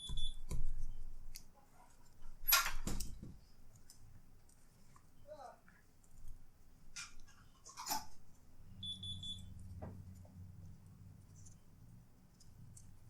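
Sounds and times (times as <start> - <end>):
rapid high electronic beeps: 8.8 - 9.5.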